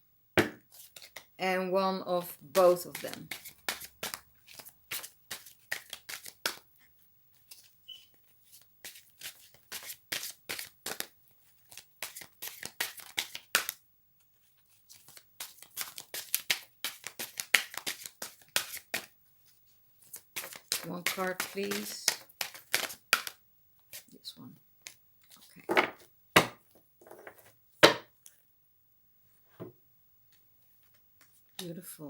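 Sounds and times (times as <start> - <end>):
cards being shuffled: 0.7 - 1.3, 2.6 - 6.6, 7.3 - 24.2, 24.8 - 28.0.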